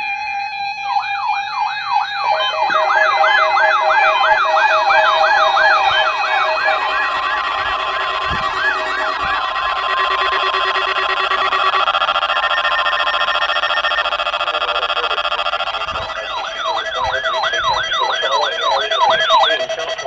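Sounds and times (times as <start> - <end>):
warbling radio siren alarms: 0.0 - 20.0
steady alert beeps: 4.7 - 20.0.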